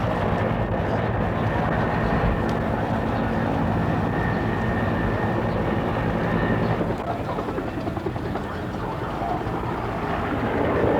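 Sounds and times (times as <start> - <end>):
helicopter engine and rotor: 0.0 - 10.9.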